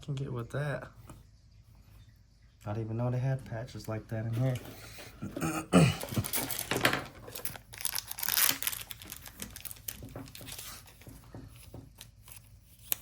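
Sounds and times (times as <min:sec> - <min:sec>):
cards clicking and rustling: 0:06.0 - 0:13.0
foil wrapper tearing and crinkling: 0:06.1 - 0:10.9.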